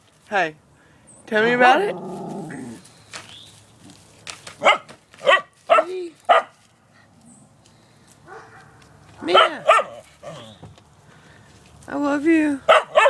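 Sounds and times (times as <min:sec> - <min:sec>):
dog barking: 0:04.6 - 0:06.5, 0:08.3 - 0:10.5, 0:12.7 - 0:13.0.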